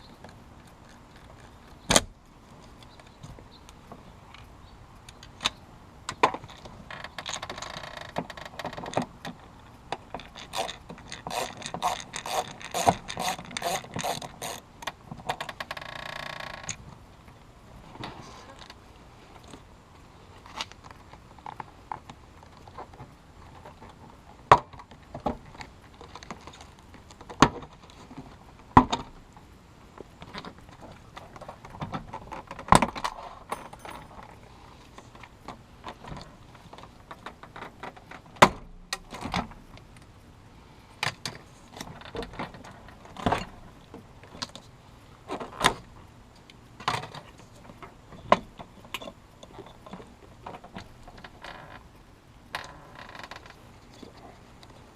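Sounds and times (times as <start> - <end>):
hand tools clicking and knocking: 5.1 - 16.8, 31.3 - 34.4.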